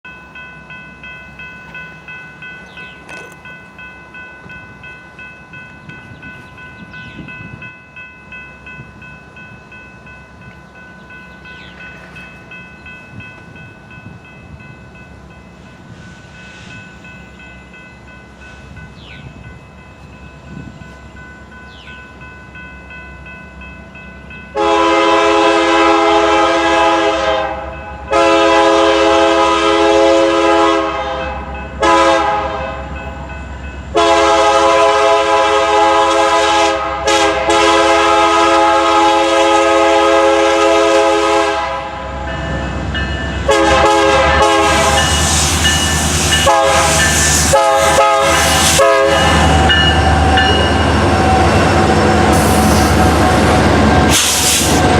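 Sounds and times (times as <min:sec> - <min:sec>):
train passing with rail noise: 0:00.0 - 0:54.9
locomotive air horn blasts: 0:24.6 - 0:32.9, 0:33.9 - 0:42.2, 0:43.4 - 0:45.4, 0:46.3 - 0:51.4.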